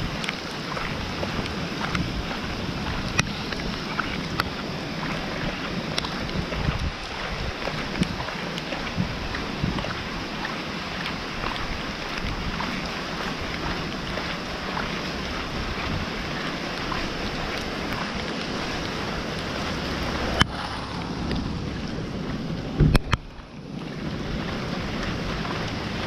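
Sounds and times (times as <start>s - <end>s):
rain falling: 0.0s - 26.0s
raindrops ticking: 0.0s - 26.0s.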